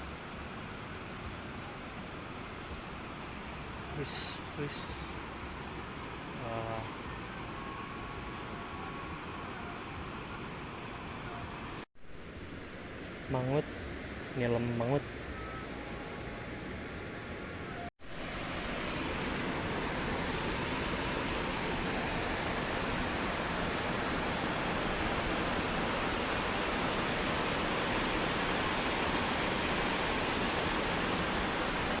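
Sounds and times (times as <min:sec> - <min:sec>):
flowing river water: 0:18.0 - 0:32.0.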